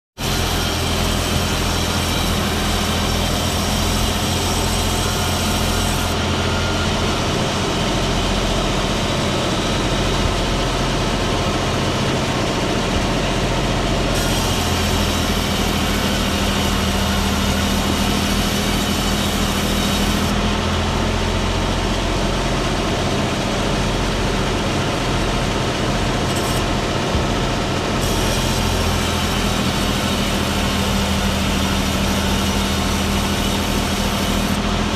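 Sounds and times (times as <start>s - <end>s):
hiss of sawing wood: 0.2s - 6.2s, 14.0s - 20.4s, 27.9s - 34.6s
engine drone: 0.2s - 34.9s.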